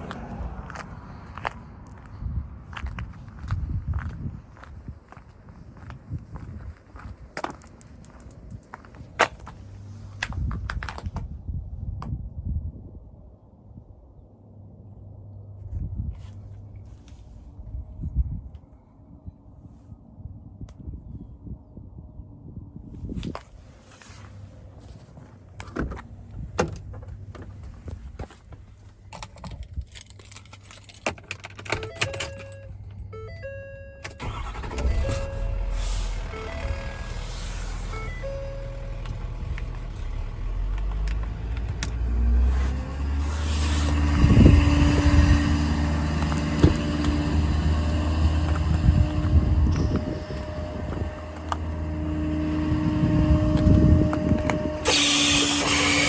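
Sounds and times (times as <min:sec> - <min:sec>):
keys jingling: 0:29.3 - 0:32.8
diesel engine starting and idling: 0:31.7 - 0:56.0
short electronic beeps: 0:36.3 - 0:37.1, 0:37.9 - 0:38.8.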